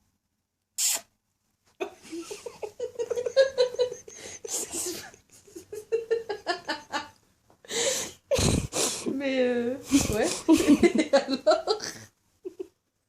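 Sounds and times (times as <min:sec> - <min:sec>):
person laughing in breathy giggles: 0:01.8 - 0:07.2, 0:09.9 - 0:12.8.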